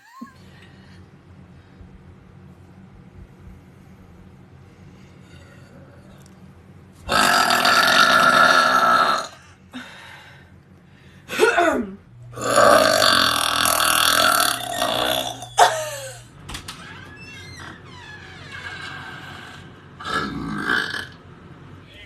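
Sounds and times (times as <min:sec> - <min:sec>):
woman burping loudly: 0:07.1 - 0:09.4, 0:11.3 - 0:16.2.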